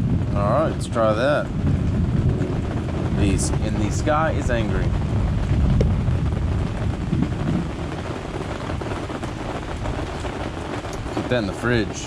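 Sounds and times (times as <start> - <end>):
rain hiss: 0.0 - 12.0
wind buffeting microphone: 0.0 - 12.0.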